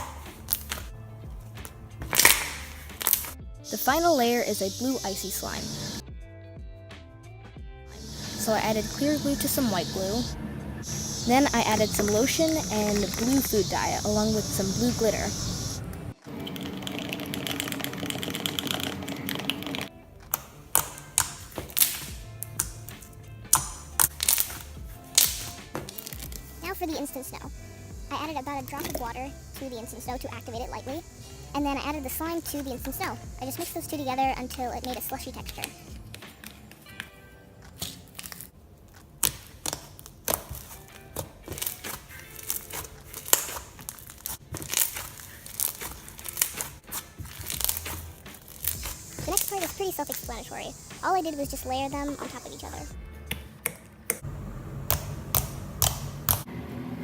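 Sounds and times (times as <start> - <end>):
slime clicking and popping: 0.0 - 0.9, 2.1 - 3.4, 17.0 - 26.5, 39.2 - 50.3, 54.9 - 56.5
background music: 0.0 - 57.0.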